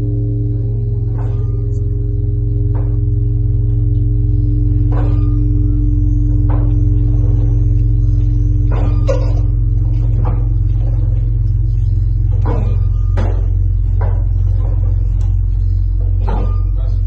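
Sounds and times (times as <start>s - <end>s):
deep bell hum: 0.0s - 17.0s
faint bell knocks: 0.0s - 17.0s.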